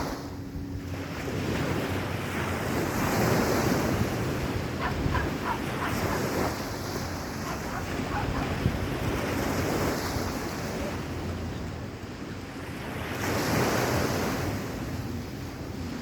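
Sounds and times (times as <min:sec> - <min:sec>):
wind buffeting microphone: 0:00.0 - 0:12.6
sea waves washing onto beach: 0:00.0 - 0:16.0.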